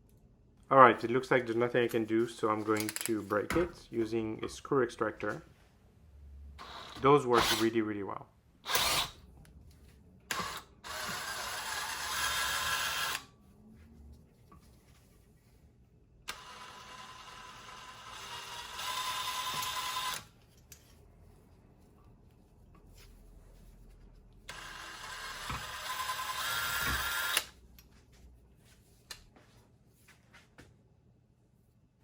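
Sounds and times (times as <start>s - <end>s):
small clicks and handling noises: 2.7s - 3.6s, 20.3s - 21.0s
power drill whining: 6.6s - 7.6s, 8.6s - 9.2s, 10.3s - 13.3s, 16.3s - 20.3s, 24.5s - 27.5s.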